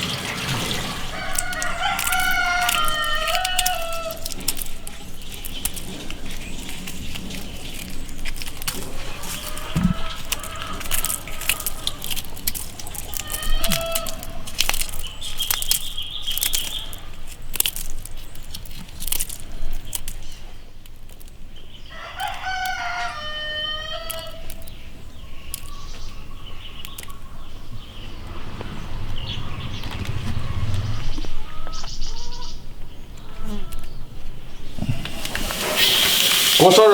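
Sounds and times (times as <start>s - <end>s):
clicks and rustling: 0.0s - 21.4s
chicken crowing: 0.7s - 4.8s, 9.1s - 12.2s, 12.8s - 14.5s, 21.9s - 24.6s.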